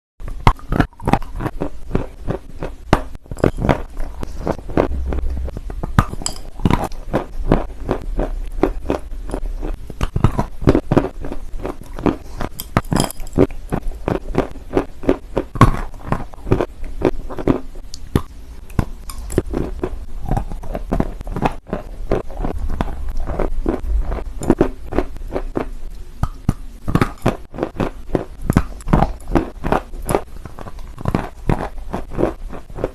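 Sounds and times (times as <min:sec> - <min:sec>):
chewing and crunching clay: 0:00.3 - 0:32.9
low rumble: 0:03.9 - 0:10.8, 0:19.3 - 0:26.0.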